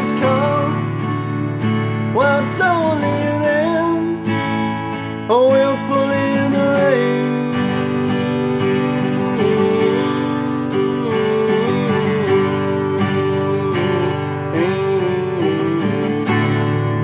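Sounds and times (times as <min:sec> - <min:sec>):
wordless singing voice: 0:00.0 - 0:16.8
strummed acoustic guitar: 0:00.0 - 0:17.0.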